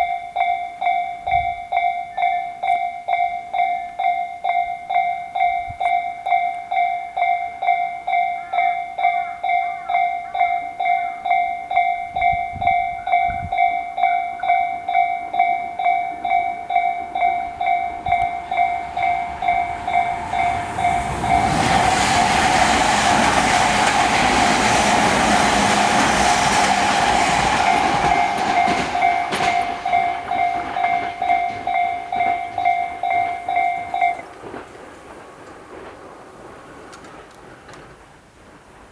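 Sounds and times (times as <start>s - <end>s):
electronic level-crossing bell: 0.0s - 22.0s, 27.4s - 34.3s
electric train passing: 0.0s - 38.9s.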